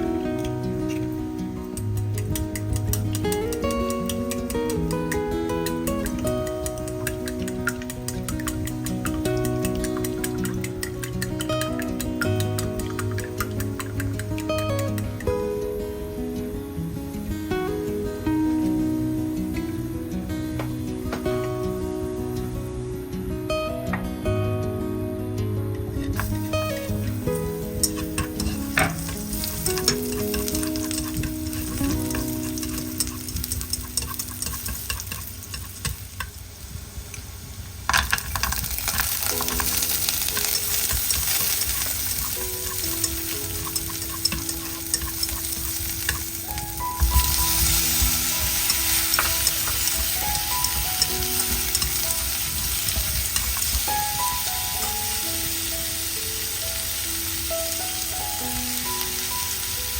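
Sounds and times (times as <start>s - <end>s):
food sizzling in hot oil: 0.0s - 18.2s, 26.2s - 59.9s
stirring: 1.6s - 15.2s, 27.8s - 36.4s, 38.0s - 54.5s.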